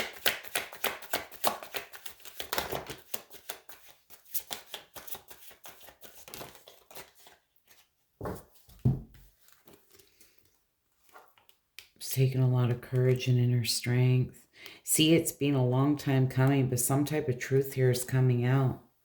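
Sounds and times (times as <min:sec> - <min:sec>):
cards being shuffled: 0:00.0 - 0:11.9.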